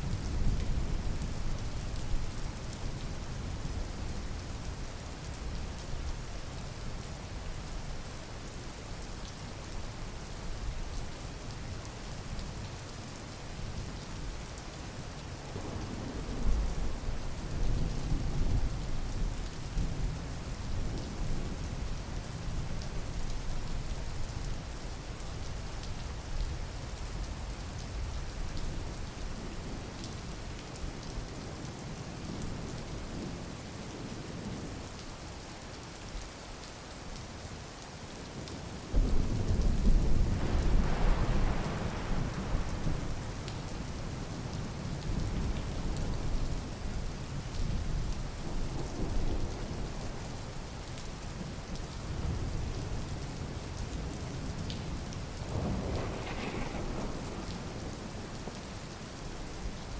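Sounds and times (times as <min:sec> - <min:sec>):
steady rain: 0:00.0 - 0:59.9
thunder rumbling: 0:38.9 - 0:44.5, 0:55.4 - 0:58.7.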